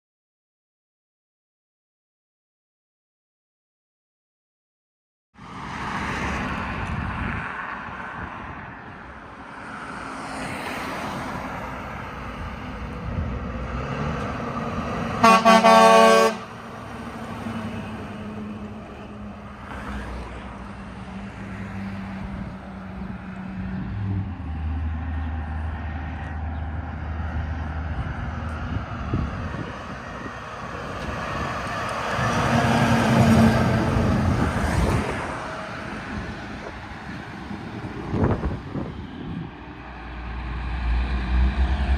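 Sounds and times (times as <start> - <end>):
road traffic passing: 5.4 - 41.9
heavy vehicle engine drone: 11.4 - 41.9
truck horn blast: 15.1 - 16.8.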